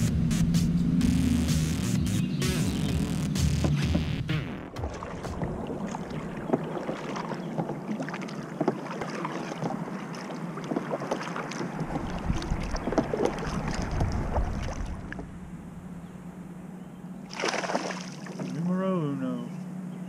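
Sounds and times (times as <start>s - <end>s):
wind on microphone: 11.8s - 15.8s.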